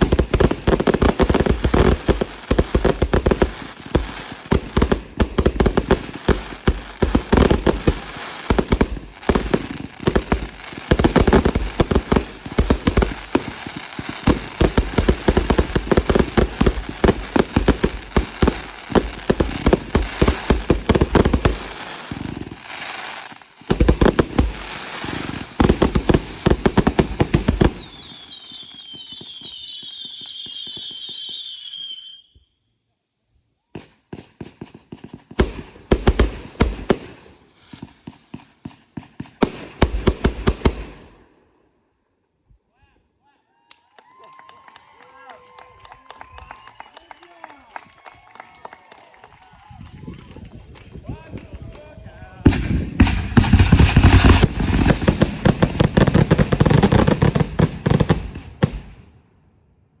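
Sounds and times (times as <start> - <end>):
firework cracks and bangs: 0.0 - 32.0, 33.8 - 41.1, 52.4 - 59.2
firework whistle with crackling: 27.6 - 32.6.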